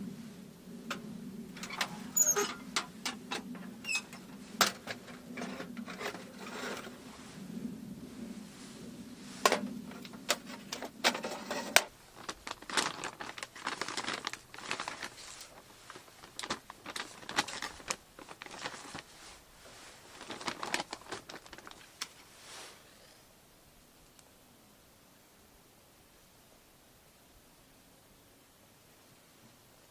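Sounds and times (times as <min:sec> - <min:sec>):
objects crinkling and rustling: 0:01.6 - 0:07.0, 0:09.3 - 0:22.8.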